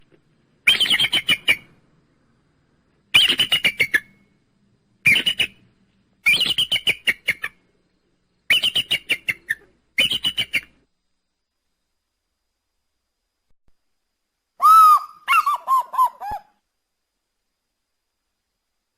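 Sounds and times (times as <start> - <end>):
eagle chattering calls: 14.6 - 16.5.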